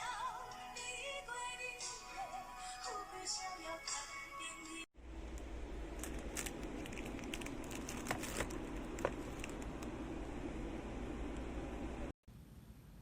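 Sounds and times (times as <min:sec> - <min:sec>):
music: 0:00.0 - 0:04.9
steady low hum: 0:05.0 - 0:13.0
small clicks and crinkling: 0:06.0 - 0:09.9.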